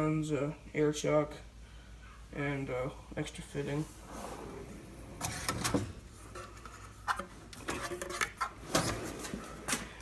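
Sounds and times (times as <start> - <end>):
steel drawers sliding: 3.9 - 10.0.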